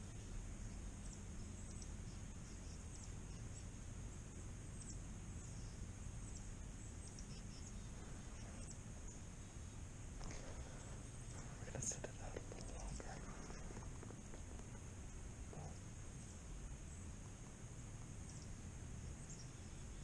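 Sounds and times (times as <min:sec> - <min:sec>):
low steady rumble: 0:00.0 - 0:20.0
thin high hiss: 0:00.0 - 0:20.0
faint high chirps: 0:04.6 - 0:09.8.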